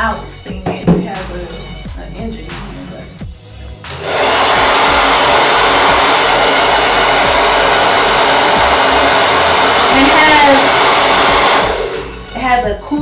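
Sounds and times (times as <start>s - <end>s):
blow dryer switch: 3.9s - 12.4s
blow dryer rush of air: 3.9s - 12.6s.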